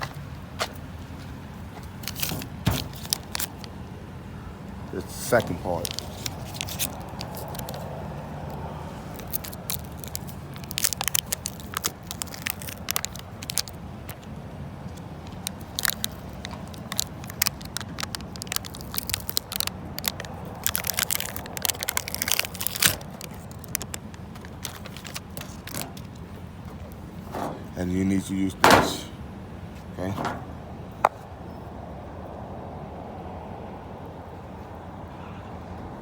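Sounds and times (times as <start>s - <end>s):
tools clicking and scraping: 22.7s - 27.8s, 28.6s - 29.2s, 30.0s - 30.6s.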